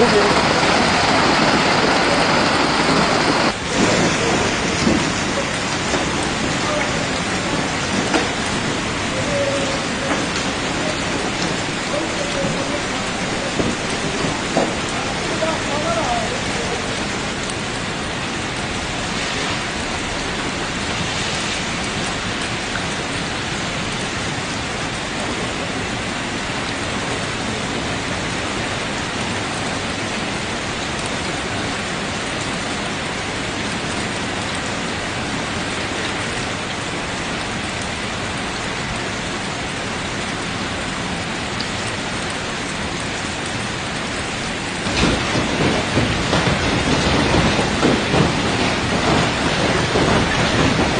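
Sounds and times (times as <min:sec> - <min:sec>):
loud rough noise: 0:00.0 - 0:23.1, 0:43.1 - 0:50.9
steady rain falling: 0:00.0 - 0:50.9.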